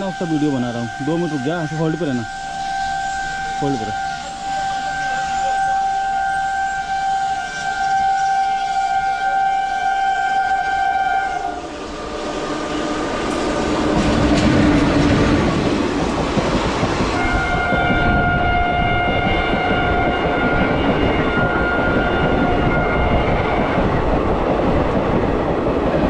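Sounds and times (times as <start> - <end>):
locomotive horn blast: 0.0 - 15.6, 17.2 - 23.9
train rumbling and clattering past: 11.4 - 26.0.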